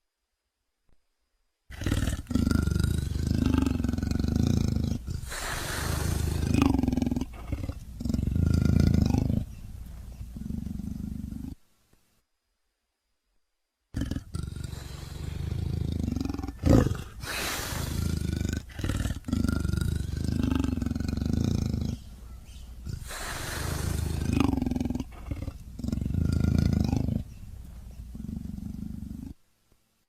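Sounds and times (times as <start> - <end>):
harsh creature hissing: 1.8 - 8.2, 14.0 - 22.0, 22.9 - 27.0
creature roaring: 14.0 - 22.0.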